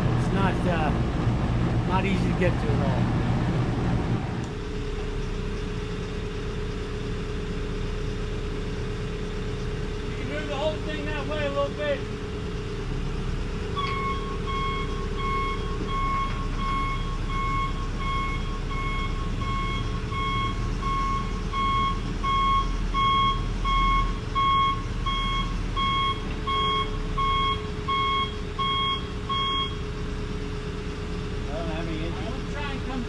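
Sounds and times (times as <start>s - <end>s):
reversing alarm beeping: 13.7s - 29.9s.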